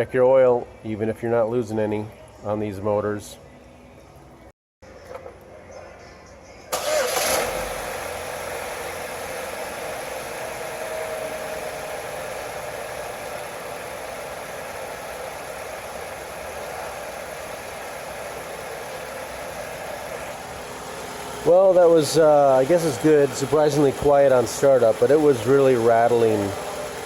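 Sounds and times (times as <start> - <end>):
car engine starting and idling: 6.5 - 27.0.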